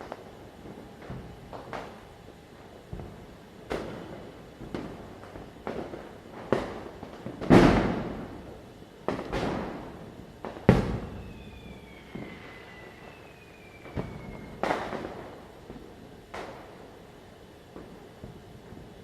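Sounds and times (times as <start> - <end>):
firecrackers bursting: 2.8 - 17.2.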